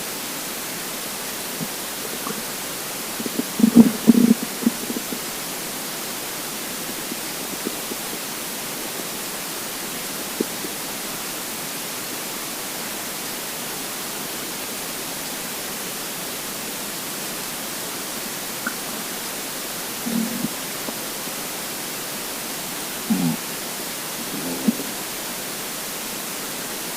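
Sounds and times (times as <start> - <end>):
recording hiss: 0.0 - 26.9
stomach gurgle: 1.1 - 11.7, 17.9 - 26.1.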